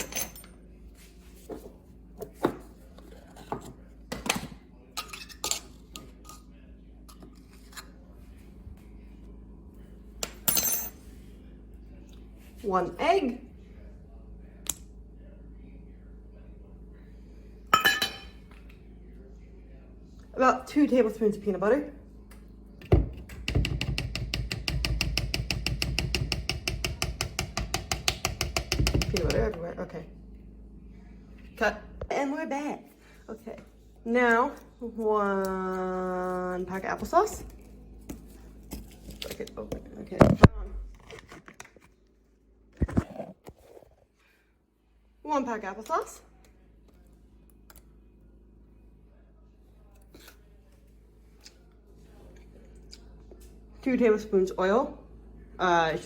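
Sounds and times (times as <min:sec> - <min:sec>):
utensils clinking against bowls: 0:04.9 - 0:06.5.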